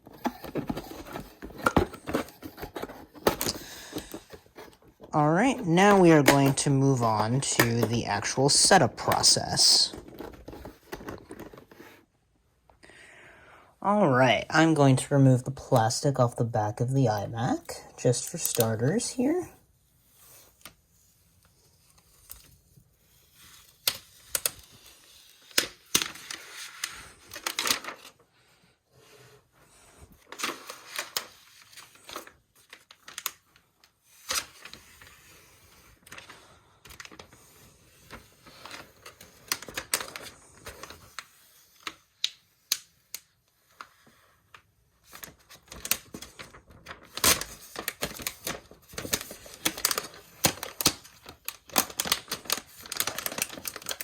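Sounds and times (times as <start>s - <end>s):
plastic film peeling crinkling: 30.3s - 37.4s, 44.5s - 54.0s.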